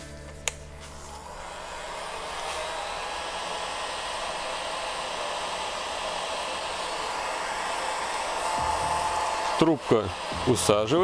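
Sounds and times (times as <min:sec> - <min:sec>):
heat gun blowing air: 0:00.9 - 0:11.0.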